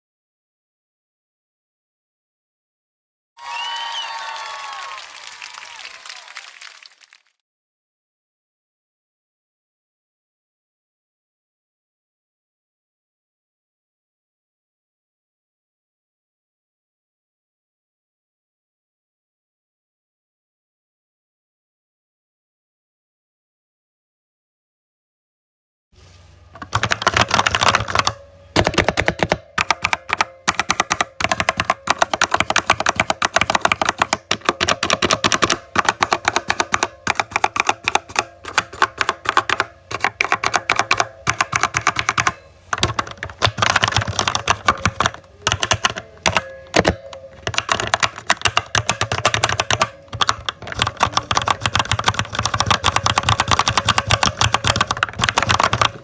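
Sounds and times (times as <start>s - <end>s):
keyboard typing clicks: 26.6s - 56.0s.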